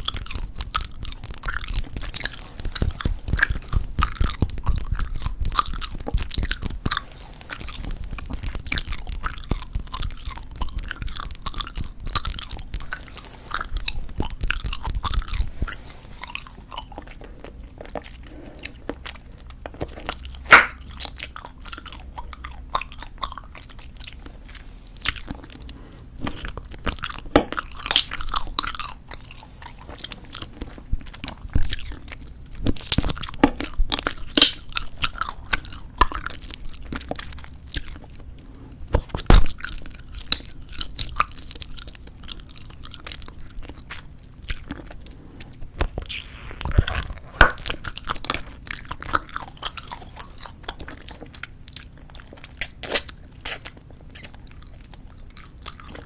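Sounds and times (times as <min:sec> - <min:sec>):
bubblegum chewing clicks and smacks: 0:00.0 - 0:29.3, 0:29.9 - 0:38.3.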